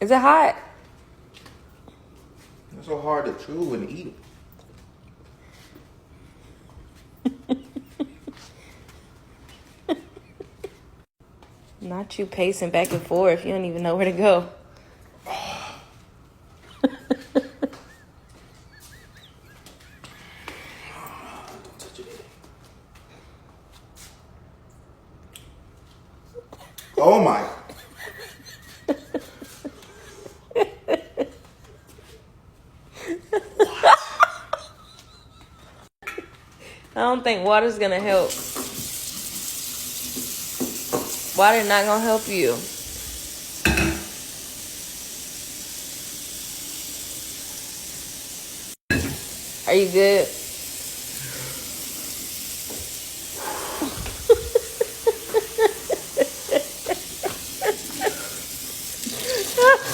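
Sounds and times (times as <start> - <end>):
person chuckling: 7.2 - 8.6, 16.7 - 20.4, 33.0 - 36.2, 53.4 - 59.9.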